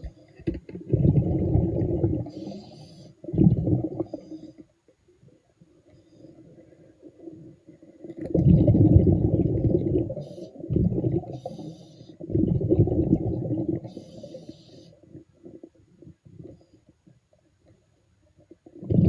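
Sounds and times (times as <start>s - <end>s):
exhaled bubbles rumbling underwater: 0.8s - 4.5s, 6.6s - 16.7s, 18.6s - 19.0s
diving regulator hiss: 2.3s - 3.2s, 11.3s - 12.2s, 13.9s - 15.0s.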